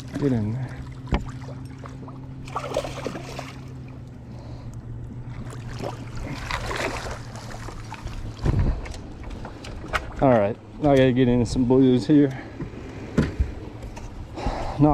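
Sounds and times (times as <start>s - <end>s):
water splashing at boat side: 0.0s - 4.1s, 5.2s - 10.3s
steady low hum: 0.0s - 14.9s.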